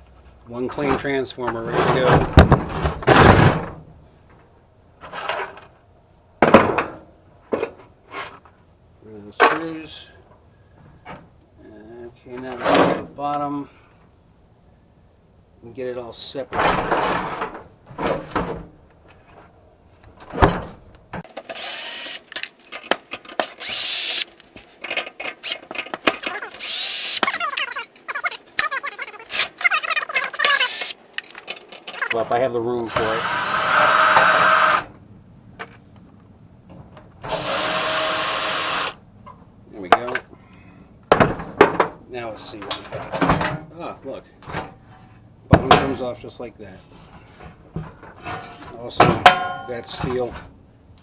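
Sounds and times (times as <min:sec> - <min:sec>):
power drill driving screws: 0:21.3 - 0:27.7, 0:29.3 - 0:31.3, 0:32.9 - 0:34.8, 0:37.3 - 0:38.9
clicks and rattles: 0:21.3 - 0:32.2.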